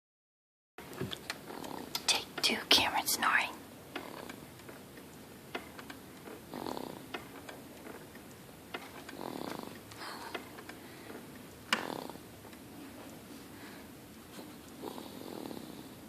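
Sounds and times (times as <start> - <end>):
baby snoring: 1.5 - 1.9, 4.0 - 4.4, 6.5 - 7.1, 9.1 - 10.2, 11.8 - 12.3, 14.8 - 16.0.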